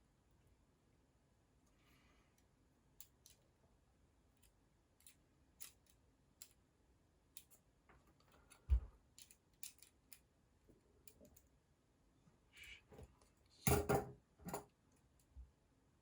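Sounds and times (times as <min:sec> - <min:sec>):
small metal parts clicking: 0:04.4 - 0:06.6, 0:07.3 - 0:07.6, 0:08.2 - 0:10.3.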